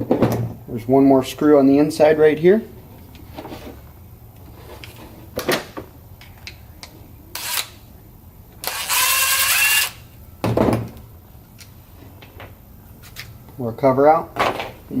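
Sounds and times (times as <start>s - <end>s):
impact driver motor whine: 8.6s - 10.0s.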